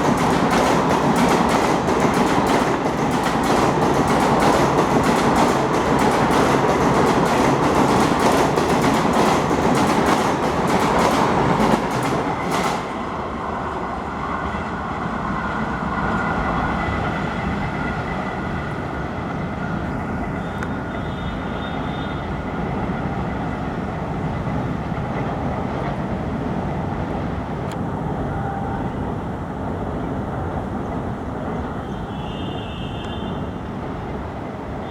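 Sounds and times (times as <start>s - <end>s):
train wheels clicking over rail joints: 0.0s - 13.1s
train rumble: 0.0s - 34.9s.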